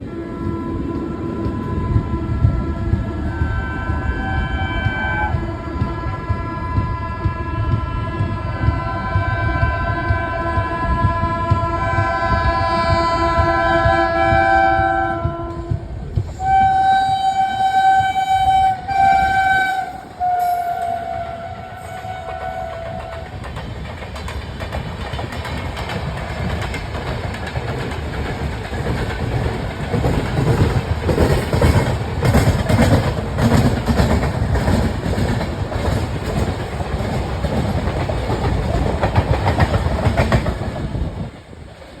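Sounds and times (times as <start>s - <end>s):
train horn blasts: 0.0s - 23.4s
train wheels clattering over rails: 0.0s - 42.0s.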